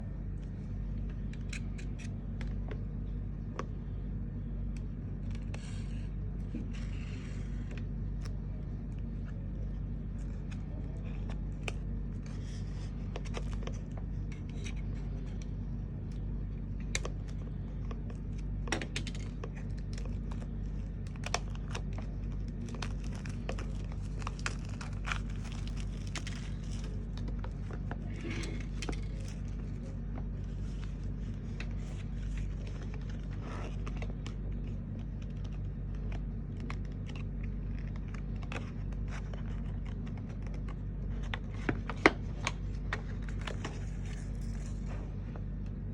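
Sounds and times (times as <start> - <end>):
steady low hum: 0.0 - 45.9
cardboard packaging tearing and crinkling: 19.2 - 42.0.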